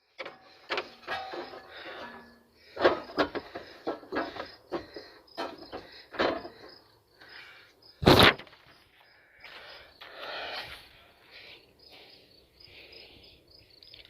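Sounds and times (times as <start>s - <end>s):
plastic parts clattering: 0.2s - 6.7s.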